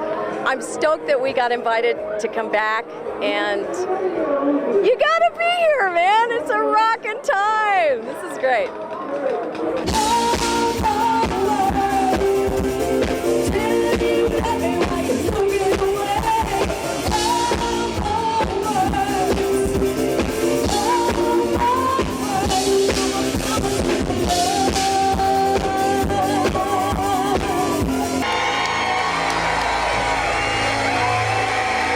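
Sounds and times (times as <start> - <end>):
drum kit: 9.8 - 31.9
live band playing: 9.8 - 31.9.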